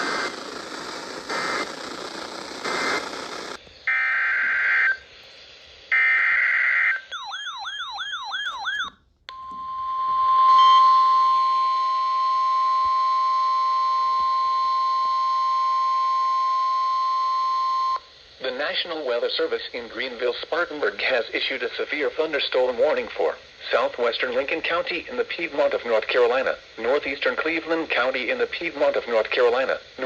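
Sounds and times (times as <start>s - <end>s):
radio static: 0.0s - 3.6s, 18.4s - 30.0s
steady alarm tone: 5.9s - 12.3s.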